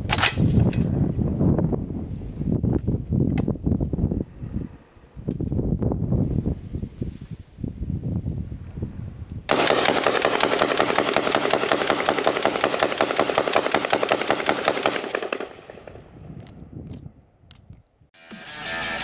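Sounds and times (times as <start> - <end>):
suppressed automatic gunfire: 9.5 - 15.8.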